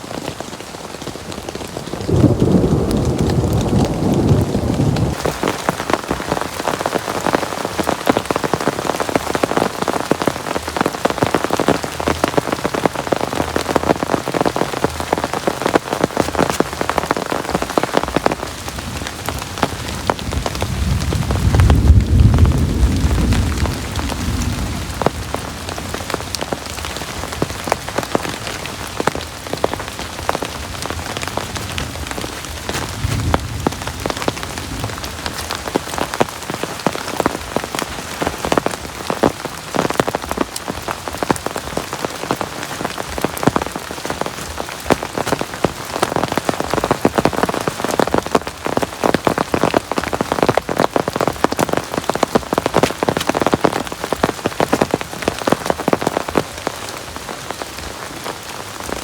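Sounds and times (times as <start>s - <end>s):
heavy rain falling: 0.0s - 59.0s
low rumble of thunder: 1.8s - 6.1s, 18.8s - 27.7s, 30.2s - 36.2s.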